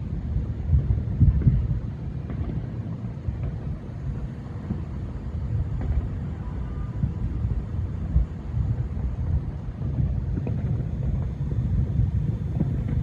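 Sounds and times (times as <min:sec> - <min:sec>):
distant fireworks rumble: 0:00.0 - 0:13.0
firework pops: 0:01.2 - 0:03.9, 0:04.5 - 0:05.0, 0:05.7 - 0:06.2, 0:09.8 - 0:13.0
firework bang: 0:02.2 - 0:03.8, 0:05.6 - 0:06.2, 0:09.8 - 0:13.0.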